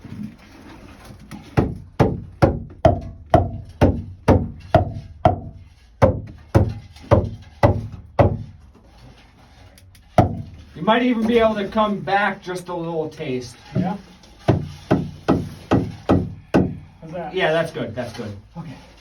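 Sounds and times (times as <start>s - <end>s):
hammer blows on wood: 1.6s - 8.6s, 14.4s - 17.0s.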